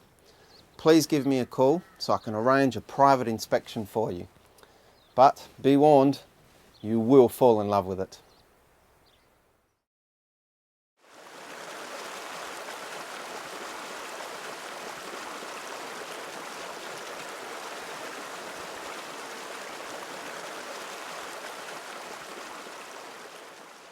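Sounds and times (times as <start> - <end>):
river water rushing: 11.0 - 23.9.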